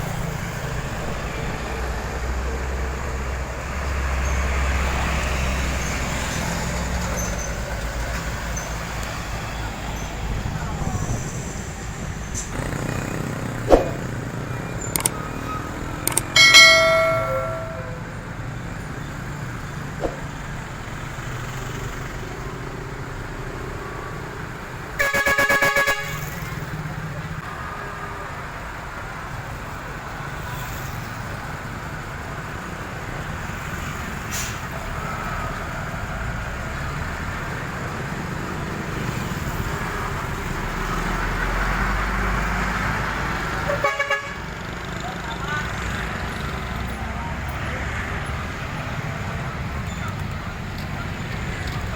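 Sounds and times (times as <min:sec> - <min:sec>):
road traffic noise: 0:00.0 - 0:51.9
truck horn blast: 0:25.0 - 0:26.4, 0:43.7 - 0:44.5.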